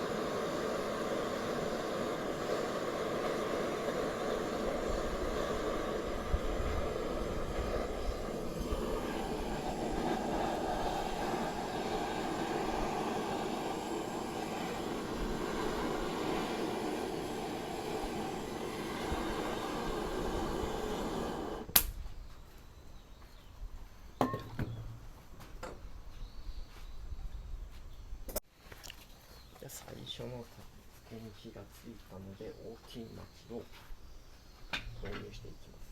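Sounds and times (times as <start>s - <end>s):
gas torch hissing: 0.0s - 22.0s
torch shut-off click: 0.0s - 22.0s.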